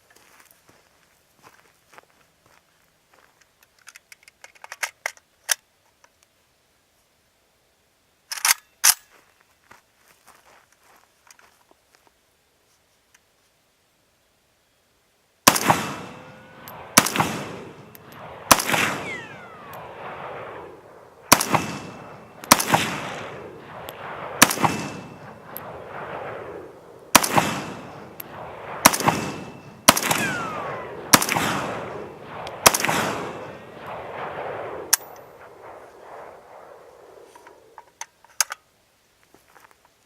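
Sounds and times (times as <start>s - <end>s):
pistol gunshots with echo: 15.5s - 37.8s.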